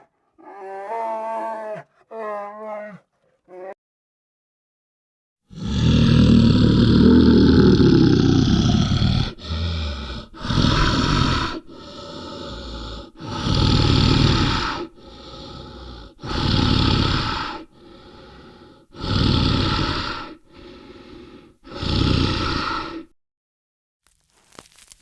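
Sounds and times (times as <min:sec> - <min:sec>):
bear breathing heavily: 0:06.6 - 0:23.1.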